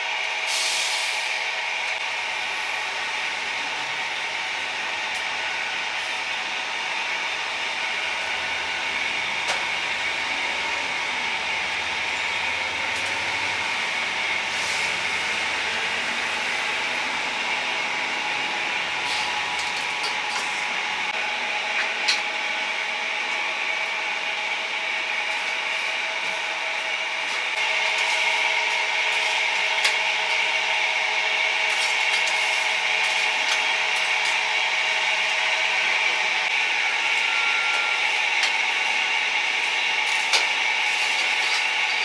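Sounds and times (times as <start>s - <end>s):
charcoal grill hissing: 0.4s - 1.4s, 31.4s - 35.7s, 36.6s - 42.0s.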